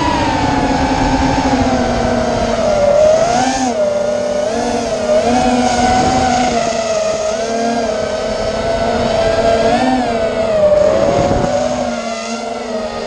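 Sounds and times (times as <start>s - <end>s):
drone motors whining: 0.0s - 13.0s
lower tone: 0.0s - 13.0s.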